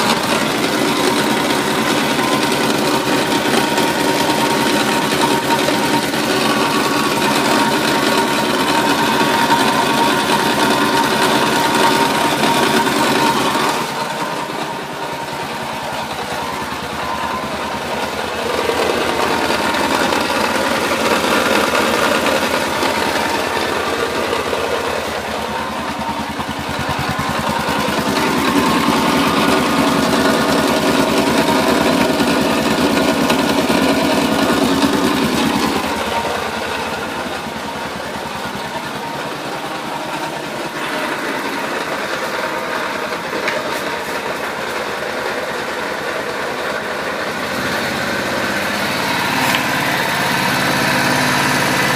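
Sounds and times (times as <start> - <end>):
atv engine running: 0.0 - 51.9
grinding noise: 0.0 - 51.9.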